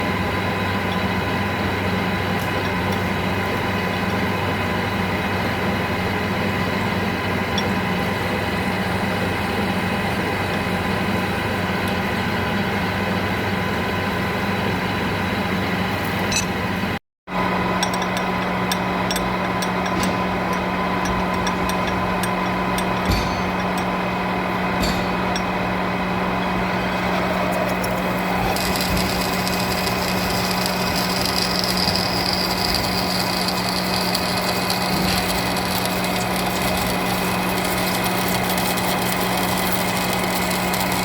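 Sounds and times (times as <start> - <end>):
lathe humming: 25.3 - 41.0.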